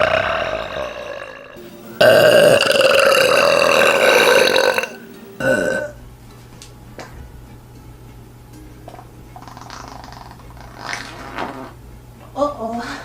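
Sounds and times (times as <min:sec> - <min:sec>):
person burping: 0:00.0 - 0:06.0.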